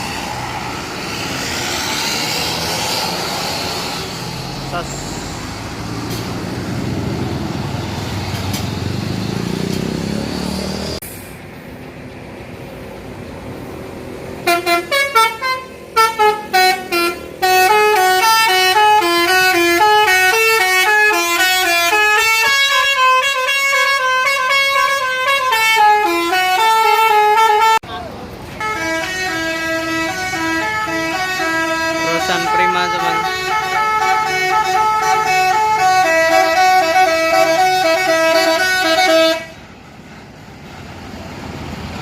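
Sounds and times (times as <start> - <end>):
multi-tone musical bus horn: 14.4 - 27.9, 28.6 - 39.7.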